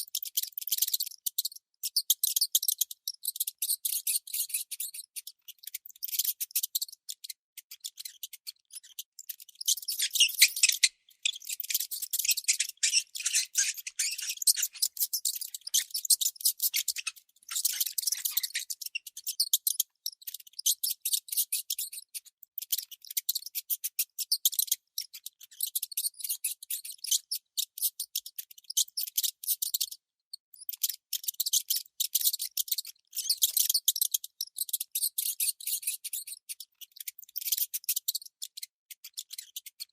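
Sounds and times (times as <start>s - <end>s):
baby mouse squeaking: 0.0s - 39.9s.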